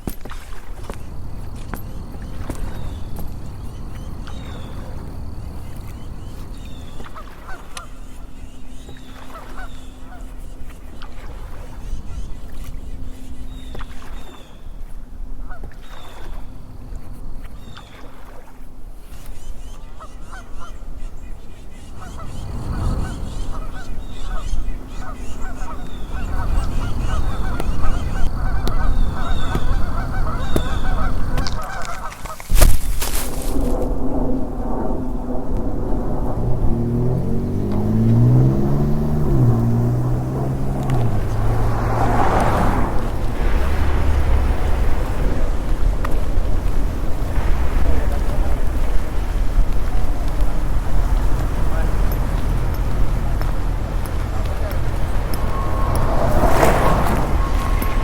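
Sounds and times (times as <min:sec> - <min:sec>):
geese honking: 0:06.0 - 0:12.5, 0:19.6 - 0:32.4
low rumbling background: 0:33.5 - 0:58.0
loud crash: 0:41.0 - 0:52.6.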